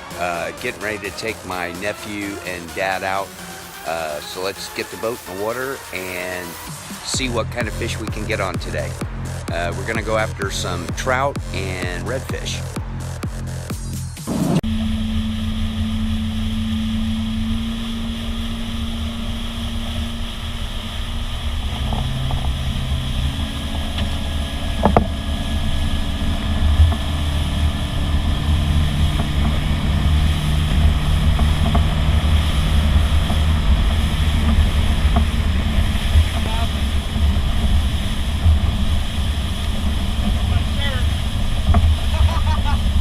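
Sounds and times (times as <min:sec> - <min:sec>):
motorboat engine running: 0:00.0 - 0:14.0, 0:14.6 - 0:43.0
water rushing past hull: 0:14.6 - 0:43.0
wind buffeting microphone: 0:15.2 - 0:43.0.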